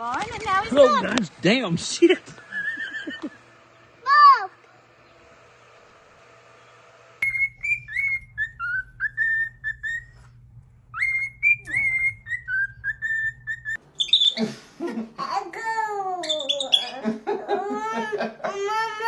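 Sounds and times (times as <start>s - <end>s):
faint low hum: 0.0s - 19.0s
person whistling a tune: 11.0s - 13.8s.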